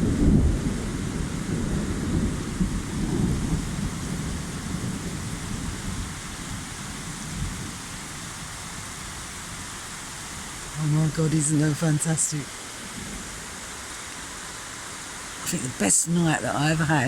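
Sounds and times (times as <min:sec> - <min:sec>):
thunder rumbling: 0:00.0 - 0:08.8
heavy rain: 0:00.0 - 0:17.0.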